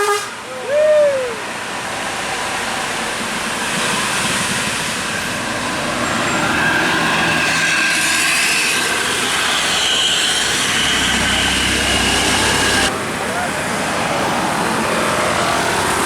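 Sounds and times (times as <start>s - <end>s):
bus driving past: 0.4s - 16.0s
thin steady whine: 8.9s - 13.0s.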